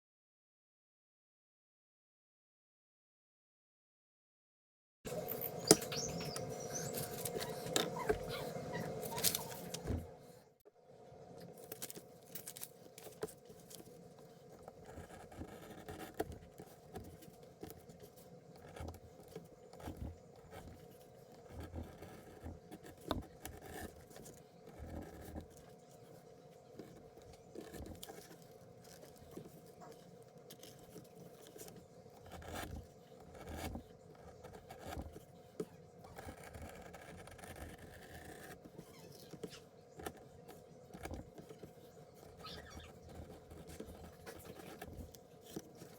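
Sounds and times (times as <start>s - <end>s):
objects being handled: 5.1s - 10.4s, 11.3s - 31.9s, 38.6s - 45.9s.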